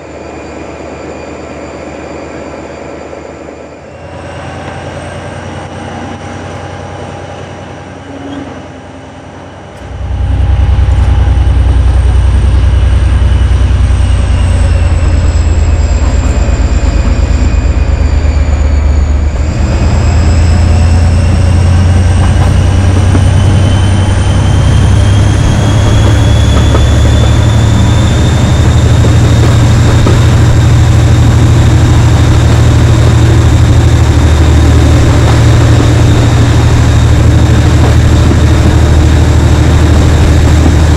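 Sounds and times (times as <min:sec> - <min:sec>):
diesel locomotive engine throbbing: 0:00.0 - 0:40.9
whistling engine tone: 0:09.4 - 0:40.9.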